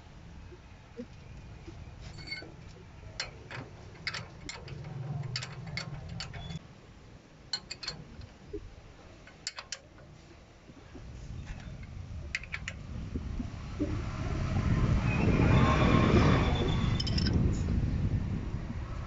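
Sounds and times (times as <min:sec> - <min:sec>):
metallic tool clicks and taps: 0:03.2 - 0:06.6, 0:07.5 - 0:08.4, 0:09.2 - 0:10.1, 0:11.5 - 0:12.8.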